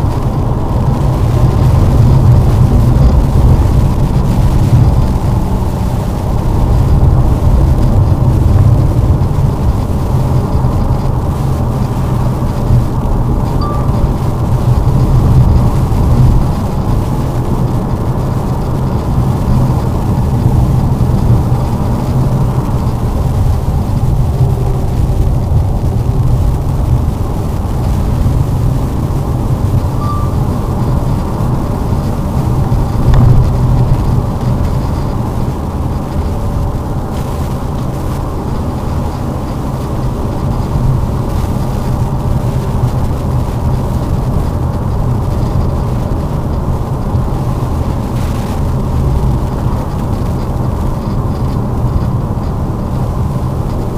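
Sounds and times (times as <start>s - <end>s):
car engine and tyre rumble: 0.0s - 53.9s.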